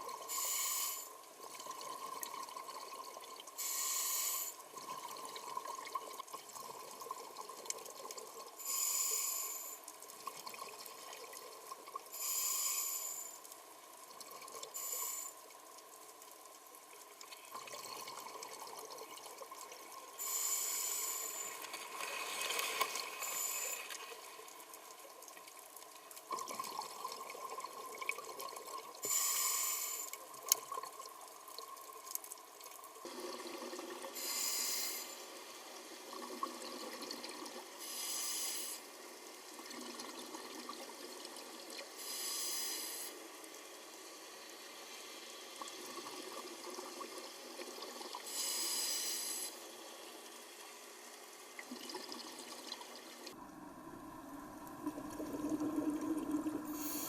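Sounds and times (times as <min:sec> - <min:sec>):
bursts of hissing bubbles: 0:03.6 - 0:04.6, 0:14.8 - 0:15.4, 0:53.3 - 0:57.0
water bubbling and sloshing: 0:51.6 - 0:57.0.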